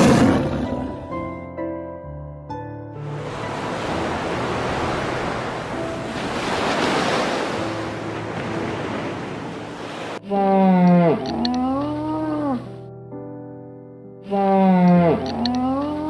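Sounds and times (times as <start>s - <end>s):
soft background music: 0.0s - 16.0s
rushing surf-like noise: 3.1s - 10.2s.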